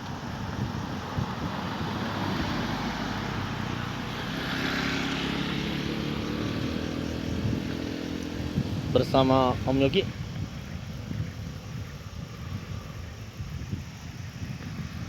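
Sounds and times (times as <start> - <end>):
bus engine rumbling: 0.0 - 10.0.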